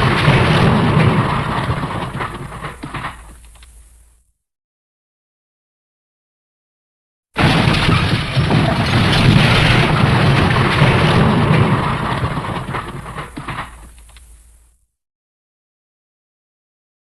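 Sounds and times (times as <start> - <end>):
rumbling crash: 0.0 - 3.4, 7.4 - 14.7.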